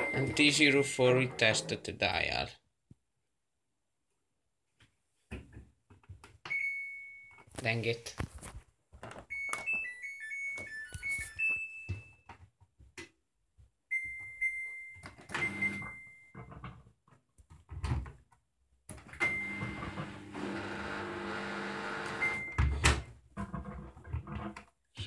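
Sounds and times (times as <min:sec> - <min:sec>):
washing machine short beeps: 0:00.0 - 0:00.9, 0:13.9 - 0:16.4, 0:19.2 - 0:19.8, 0:22.2 - 0:22.8.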